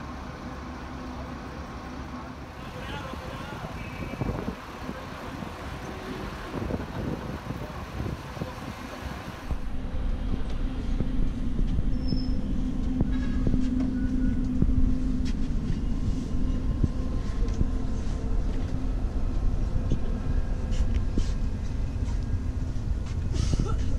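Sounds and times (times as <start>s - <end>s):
large vehicle engine rumbling: 0.0s - 23.9s.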